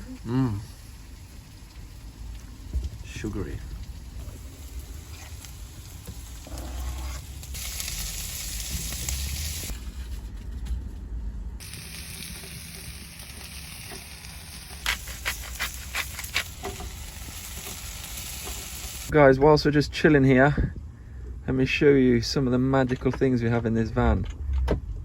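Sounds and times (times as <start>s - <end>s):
rain hissing on a van roof: 0.0s - 9.9s.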